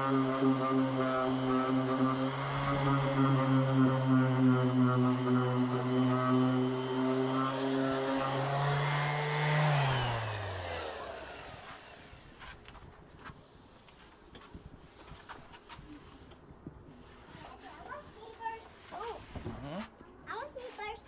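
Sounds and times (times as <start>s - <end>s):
motor humming and winding down: 0.0s - 12.6s.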